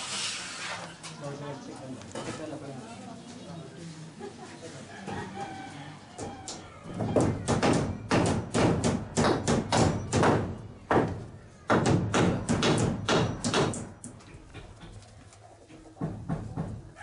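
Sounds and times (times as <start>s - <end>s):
loud knocks: 6.2s - 14.0s, 16.0s - 16.9s.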